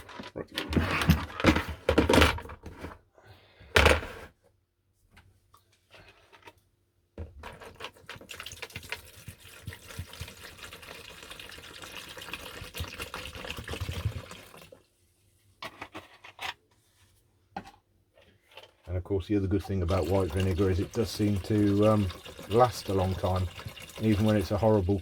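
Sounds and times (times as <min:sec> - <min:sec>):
liquid pouring into container: 0:07.6 - 0:14.9, 0:19.2 - 0:25.0.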